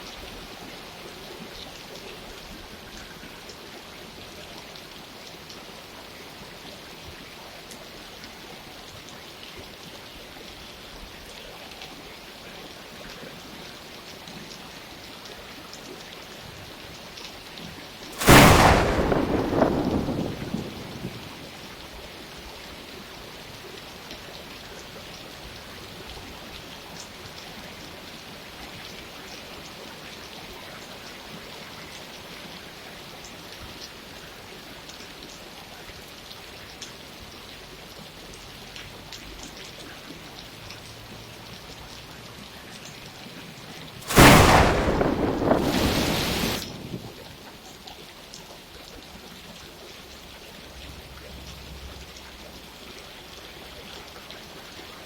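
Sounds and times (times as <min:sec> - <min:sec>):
rain falling: 0:00.0 - 0:55.0
thunder: 0:18.2 - 0:21.8, 0:44.0 - 0:47.5.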